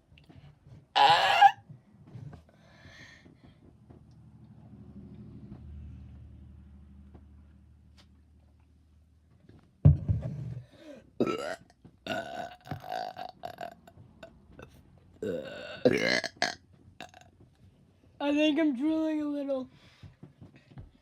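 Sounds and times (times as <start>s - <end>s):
person burping: 1.0s - 1.6s, 11.2s - 13.9s, 15.2s - 17.3s.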